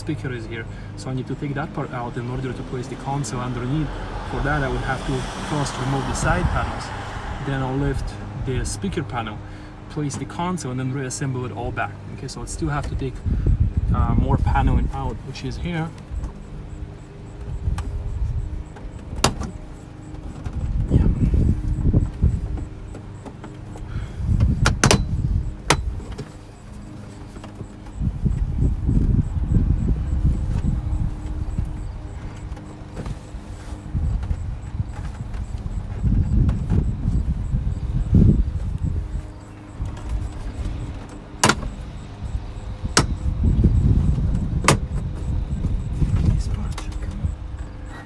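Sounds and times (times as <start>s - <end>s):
sharp plastic clicks: 40.0s - 43.2s
panel clips snapping: 41.4s - 41.7s.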